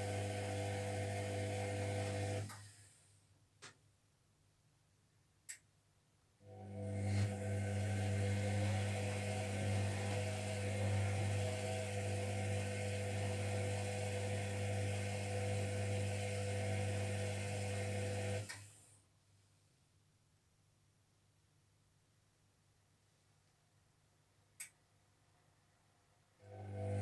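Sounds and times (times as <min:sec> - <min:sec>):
washing machine motor whining: 0:00.0 - 0:02.5, 0:06.5 - 0:18.6, 0:26.4 - 0:27.0.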